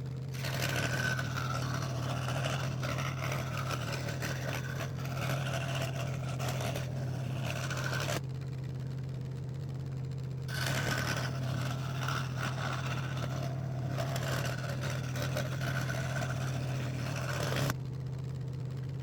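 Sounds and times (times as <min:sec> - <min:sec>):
saw motor humming: 0:00.3 - 0:08.2, 0:10.5 - 0:17.8
scroll saw blade cutting plywood: 0:00.3 - 0:08.2, 0:10.5 - 0:17.8.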